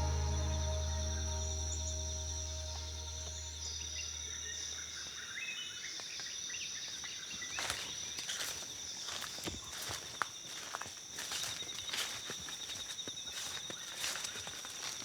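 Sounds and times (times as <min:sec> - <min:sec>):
insects buzzing: 0:00.0 - 0:15.0
footsteps crackling in dry leaves: 0:07.1 - 0:15.0.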